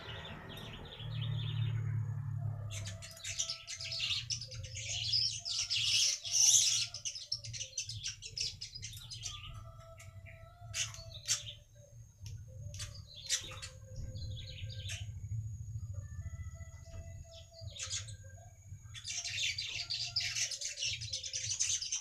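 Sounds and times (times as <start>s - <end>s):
low steady hum: 0.0s - 22.0s
weaver birds chirping: 0.0s - 22.0s.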